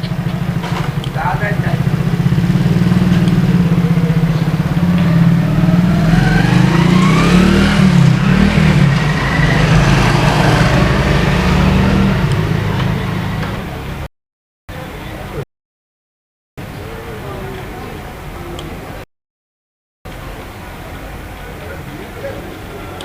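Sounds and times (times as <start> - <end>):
vehicle engine revving: 0.0 - 14.1.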